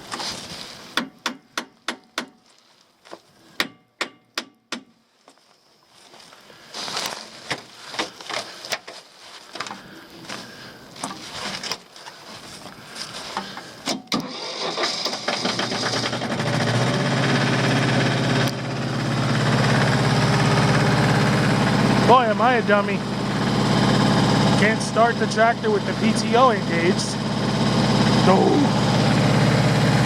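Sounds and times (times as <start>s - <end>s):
diesel tractor engine starting: 9.6s - 30.0s.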